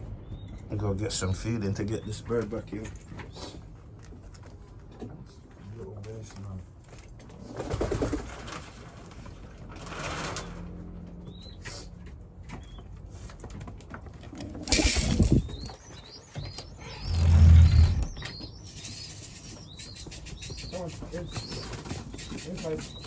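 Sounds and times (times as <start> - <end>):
pigeon wings flapping: 7.5 - 8.7, 14.3 - 15.7
birds chirping: 14.6 - 23.0.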